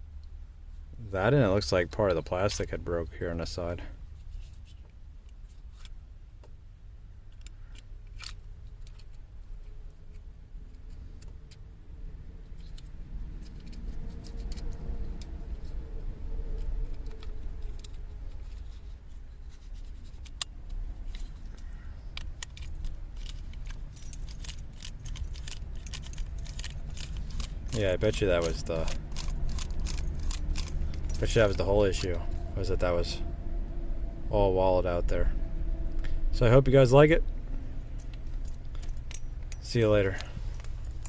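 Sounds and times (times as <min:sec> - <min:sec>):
low rumble: 0:11.8 - 0:41.0
plastic parts clicking: 0:19.8 - 0:31.6
keys jingling: 0:22.2 - 0:31.6.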